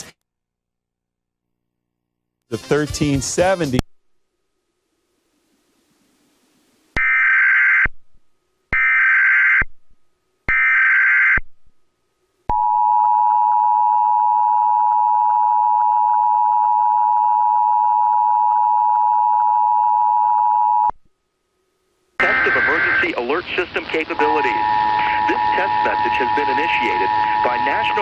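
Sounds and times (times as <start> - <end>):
rasping digital data warble: 22.2 - 28.0.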